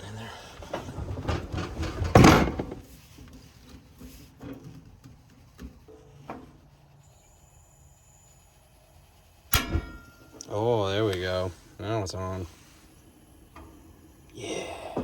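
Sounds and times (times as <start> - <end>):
loud clatter: 0.6 - 2.8.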